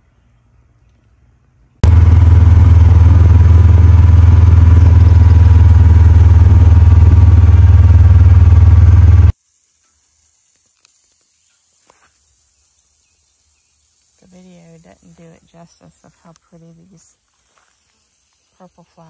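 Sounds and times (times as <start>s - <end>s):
pulsing low motor drone: 1.8s - 9.3s.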